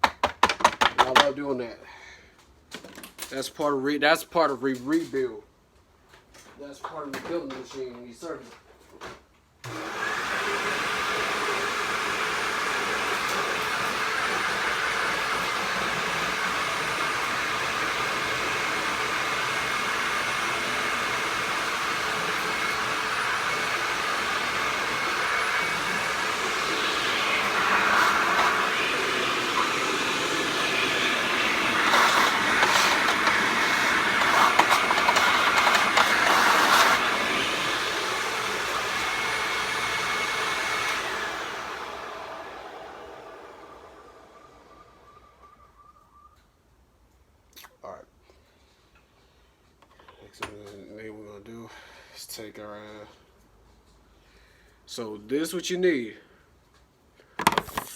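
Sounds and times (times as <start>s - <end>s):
vacuum cleaner running: 9.6s - 45.5s.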